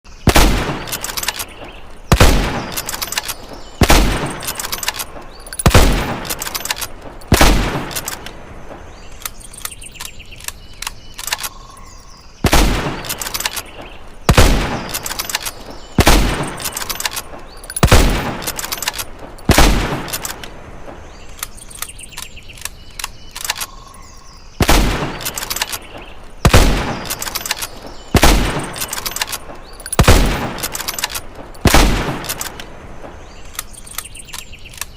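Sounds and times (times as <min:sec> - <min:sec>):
rifle shots ringing: 0:00.3 - 0:09.9, 0:12.4 - 0:20.5, 0:24.6 - 0:33.1.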